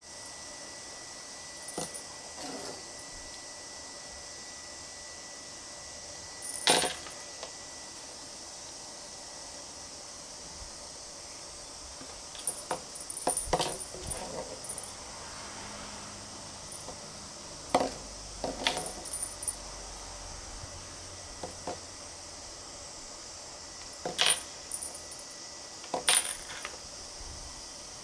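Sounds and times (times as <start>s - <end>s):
metallic clinks and jingles: 6.4s - 7.3s, 12.3s - 15.2s, 16.6s - 19.8s, 23.9s - 25.3s.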